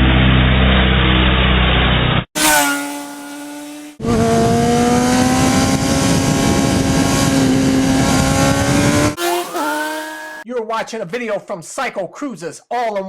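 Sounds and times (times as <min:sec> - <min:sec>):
motorcycle engine at high revs: 0:02.4 - 0:10.4.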